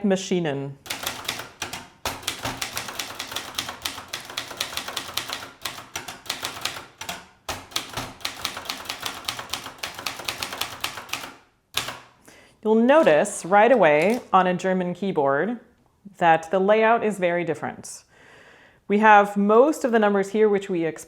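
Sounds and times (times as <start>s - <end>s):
manual typewriter typing: 0.8s - 12.2s, 12.9s - 14.5s.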